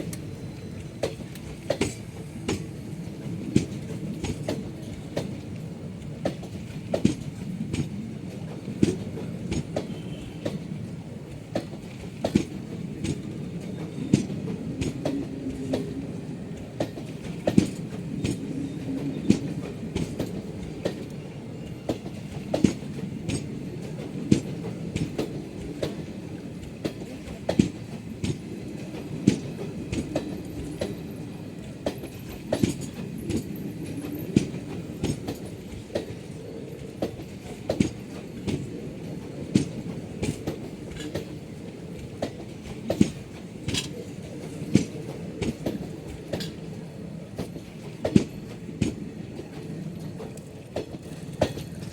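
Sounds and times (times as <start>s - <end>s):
train wheels rumbling: 0.0s - 51.9s
wheels clicking over rail joints: 21.8s - 51.9s.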